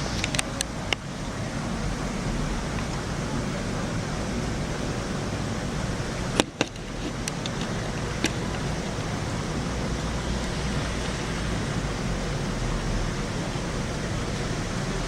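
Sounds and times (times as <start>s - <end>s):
sharp clicks: 0.0s - 9.2s
heavy rain hissing: 0.0s - 15.0s.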